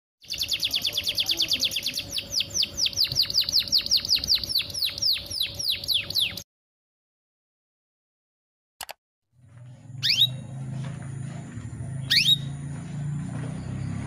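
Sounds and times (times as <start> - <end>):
canary chirping: 0.2 - 6.4, 10.0 - 10.6, 12.0 - 12.6.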